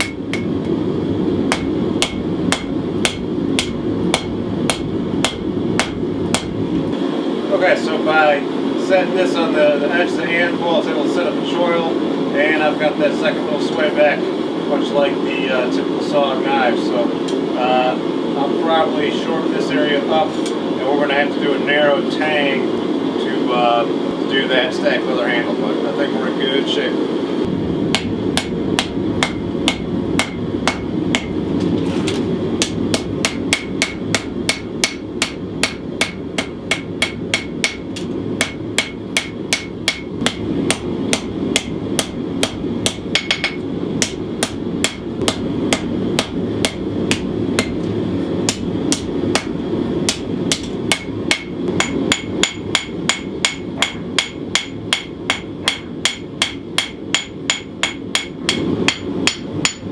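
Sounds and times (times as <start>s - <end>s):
hammer striking hot metal on anvil: 0.0s - 0.8s, 1.5s - 6.6s, 27.9s - 31.4s, 32.6s - 59.9s.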